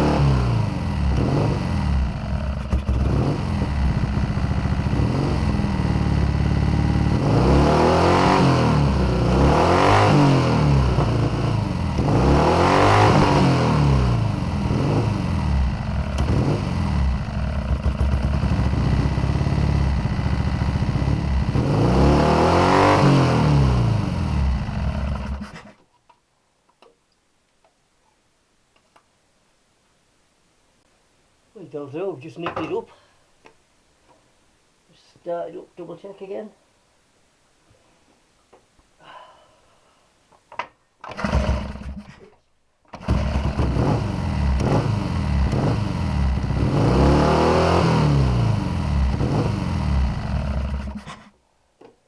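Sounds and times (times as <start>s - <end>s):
motorcycle engine revving: 0.0s - 25.8s, 41.1s - 42.1s, 43.0s - 51.3s.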